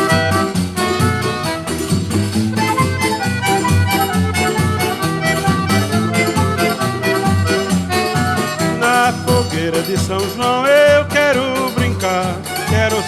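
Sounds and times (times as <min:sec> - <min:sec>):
accordion folk dance music: 0:00.0 - 0:13.0.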